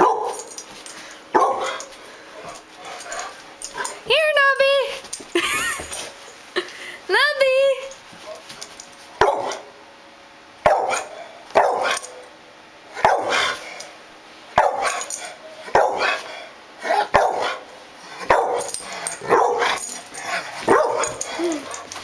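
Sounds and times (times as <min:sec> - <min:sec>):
dog barking: 0:00.0 - 0:00.5, 0:01.4 - 0:01.8, 0:09.2 - 0:09.7, 0:10.6 - 0:12.2, 0:13.0 - 0:13.6, 0:14.6 - 0:15.0, 0:15.7 - 0:16.2, 0:16.9 - 0:17.6, 0:18.2 - 0:19.8, 0:20.7 - 0:21.2.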